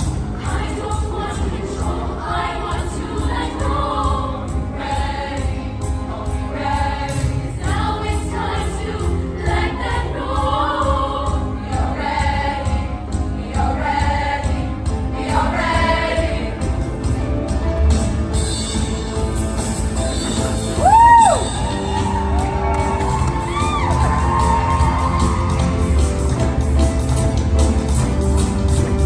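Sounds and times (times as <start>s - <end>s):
group of voices singing: 0.0s - 17.1s.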